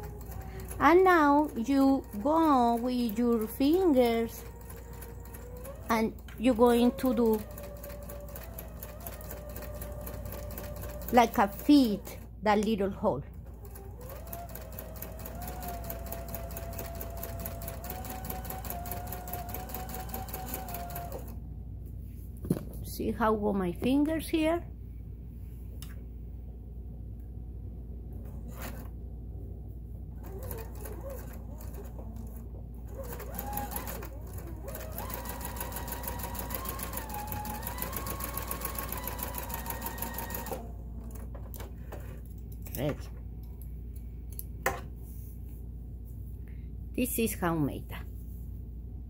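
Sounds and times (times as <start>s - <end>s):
sewing machine stitching: 0.0s - 12.3s, 13.3s - 21.4s, 28.3s - 28.9s, 30.2s - 42.9s.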